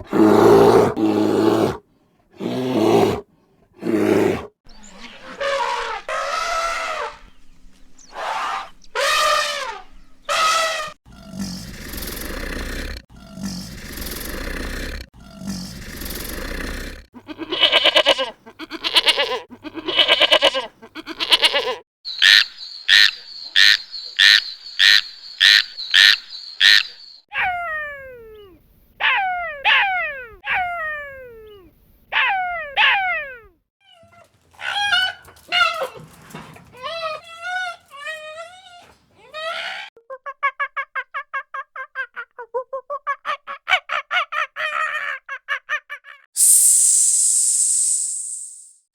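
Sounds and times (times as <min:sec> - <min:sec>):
short sharp animal calls: 0:46.4 - 0:48.7.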